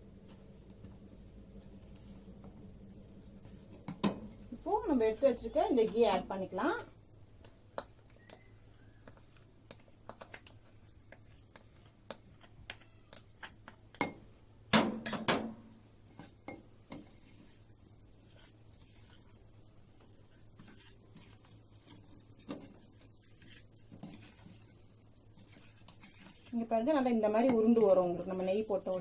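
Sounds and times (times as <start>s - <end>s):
spoon scraping against a bowl: 7.4s - 13.8s, 20.0s - 29.0s.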